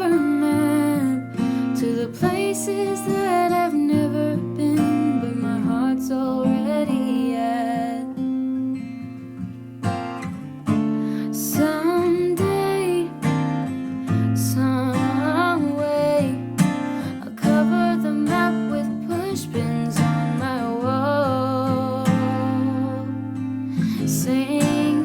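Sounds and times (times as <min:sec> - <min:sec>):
person singing: 0:00.0 - 0:08.7, 0:14.2 - 0:25.0
acoustic guitar strummed and plucked: 0:00.0 - 0:25.0.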